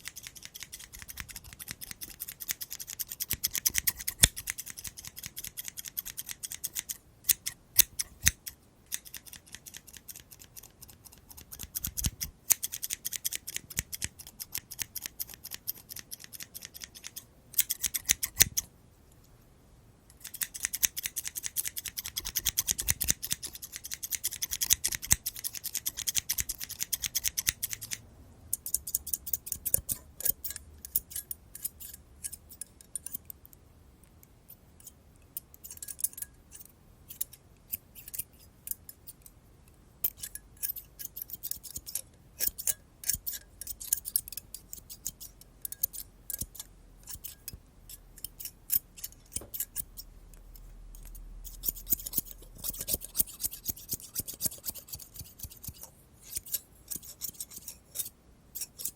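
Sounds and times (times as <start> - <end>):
scissors snipping: 0.0 - 18.7, 20.2 - 28.0, 28.6 - 32.0, 48.2 - 58.9.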